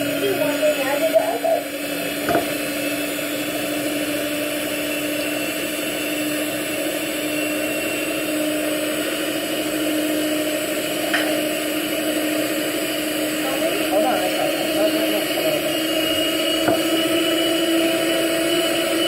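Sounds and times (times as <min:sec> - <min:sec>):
electric mixer running: 0:00.0 - 0:19.0
knock: 0:02.2 - 0:02.6, 0:16.6 - 0:16.9.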